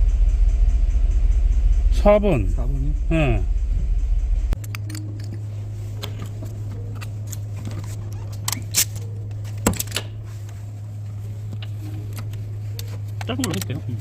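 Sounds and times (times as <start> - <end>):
car engine rumble: 0.0 - 14.0
steady low hum: 0.0 - 14.0
tools clicking and clinking: 4.6 - 5.4, 6.0 - 10.2.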